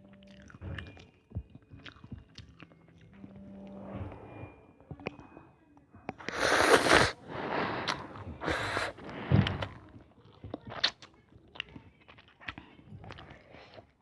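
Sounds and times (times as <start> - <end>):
soft chewing: 0.0 - 14.0
noodles being slurped: 6.2 - 9.8.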